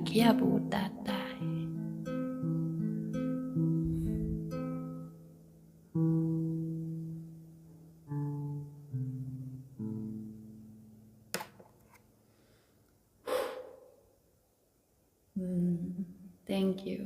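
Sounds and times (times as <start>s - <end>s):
harp plucked: 1.5s - 5.2s
breathy rush: 12.3s - 14.2s.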